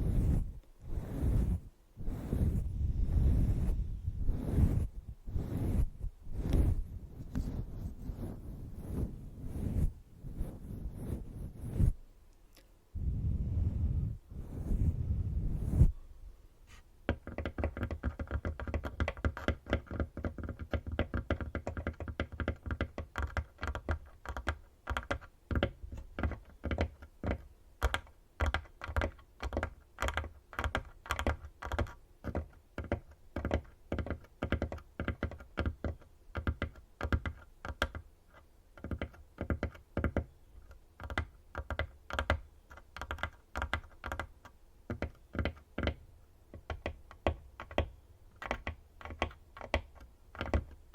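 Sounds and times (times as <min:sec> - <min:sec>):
fingernails tapping on tabletop: 0:17.1 - 0:38.0, 0:38.8 - 0:40.3, 0:43.0 - 0:50.8.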